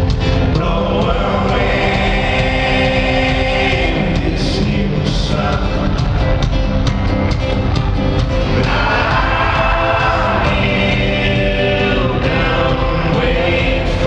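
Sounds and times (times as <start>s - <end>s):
person singing: 0.0s - 6.3s
amplified band playing live: 0.0s - 14.0s.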